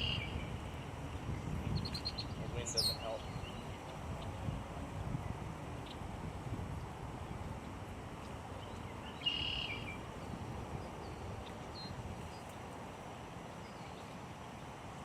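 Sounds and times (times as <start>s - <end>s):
wind on microphone: 0.0s - 12.4s
high bird call: 9.2s - 9.9s.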